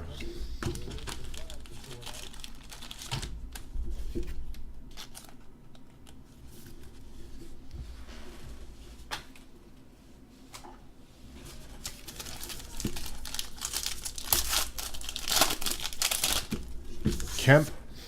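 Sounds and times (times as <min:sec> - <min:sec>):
foil wrapper crinkling and tearing: 0:00.8 - 0:03.7, 0:04.9 - 0:05.4, 0:11.8 - 0:17.3.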